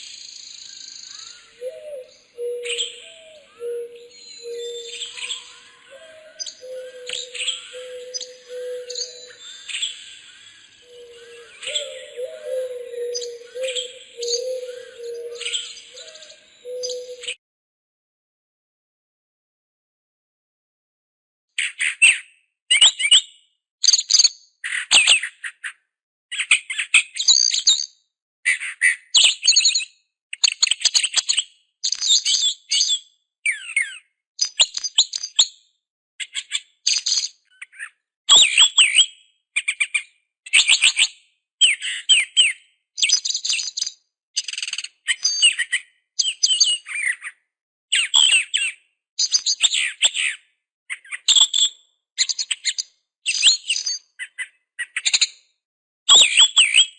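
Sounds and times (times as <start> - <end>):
songbird chirping: 0.0 - 17.4.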